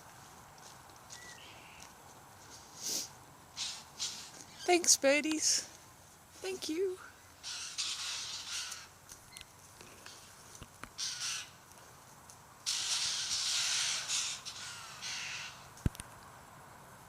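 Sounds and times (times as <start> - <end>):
birds making grating calls: 2.8 - 4.9, 7.4 - 9.4, 10.9 - 11.7, 12.6 - 15.8.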